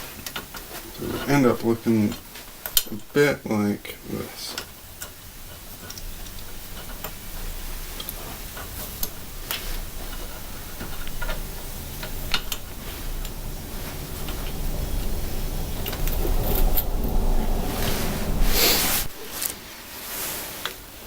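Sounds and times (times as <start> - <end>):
low rumble: 5.2 - 19.5.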